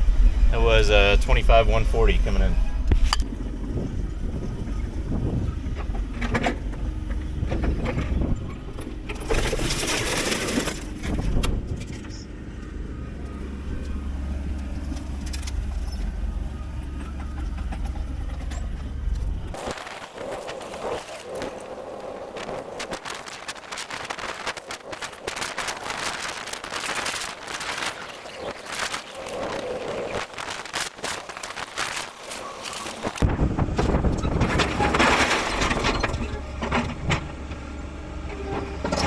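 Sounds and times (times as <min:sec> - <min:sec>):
truck engine rumbling: 0:00.0 - 0:39.0
hissing rush: 0:19.6 - 0:33.2.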